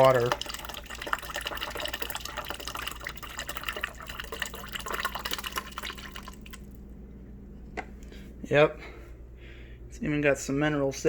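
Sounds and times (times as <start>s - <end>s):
water sputtering into plastic cup: 0.0s - 6.8s.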